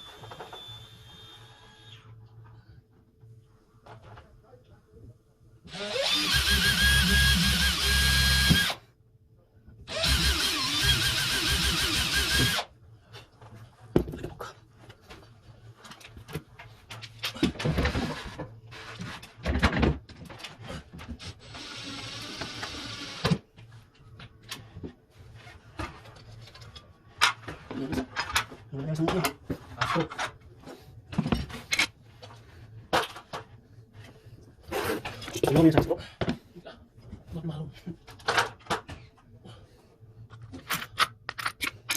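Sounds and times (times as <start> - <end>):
electric drill whining: 0.0 - 2.1, 5.7 - 8.8, 9.9 - 12.7, 21.2 - 23.4.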